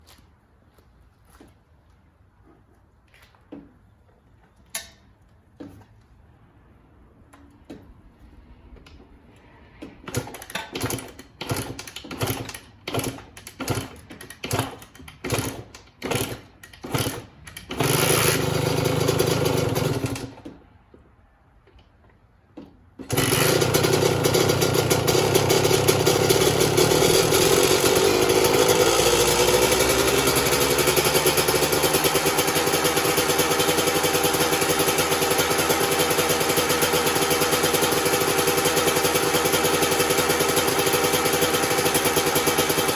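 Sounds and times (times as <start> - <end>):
two-stroke engine starting and running: 7.3 - 20.7, 22.6 - 42.9.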